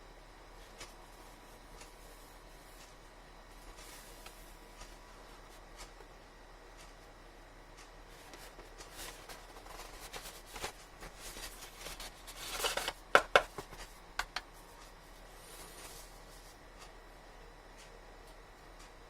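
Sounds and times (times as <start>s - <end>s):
cardboard and plastic rustling: 8.1s - 16.6s.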